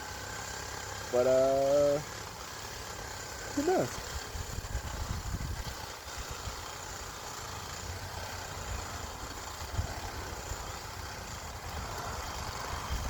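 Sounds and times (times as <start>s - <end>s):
steady outdoor hiss: 0.0s - 13.0s
wind buffeting microphone: 4.1s - 6.6s.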